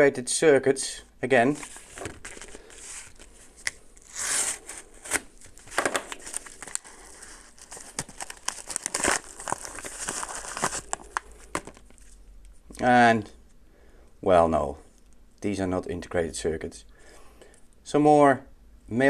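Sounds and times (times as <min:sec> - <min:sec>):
plastic packaging crinkling: 0:01.6 - 0:12.2
plastic ripping: 0:01.6 - 0:12.2.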